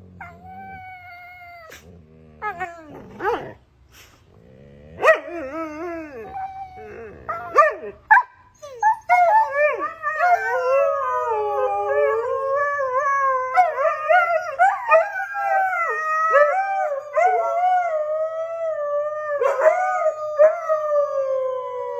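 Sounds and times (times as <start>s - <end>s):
dog howling: 4.8s - 8.0s, 8.6s - 21.9s.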